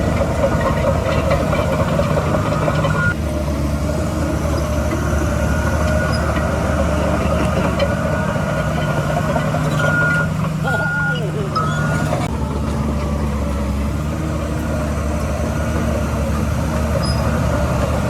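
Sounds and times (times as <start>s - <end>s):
diesel construction machinery running: 0.0s - 18.0s
brief high tone: 10.6s - 12.3s.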